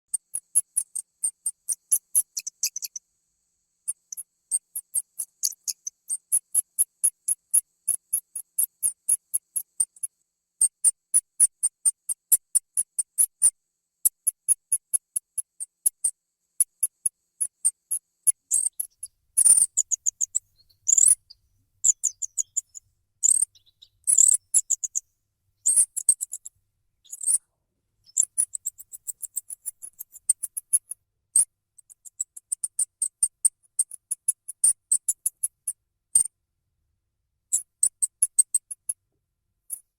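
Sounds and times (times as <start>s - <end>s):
rat squeaking: 0.2s - 3.0s, 3.9s - 10.1s, 10.8s - 13.5s, 14.2s - 25.0s, 25.6s - 27.4s, 28.1s - 35.6s.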